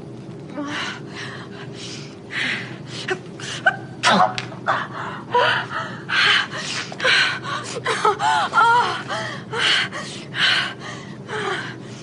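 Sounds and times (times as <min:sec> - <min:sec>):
woman moaning: 0:00.5 - 0:01.0, 0:02.3 - 0:10.1.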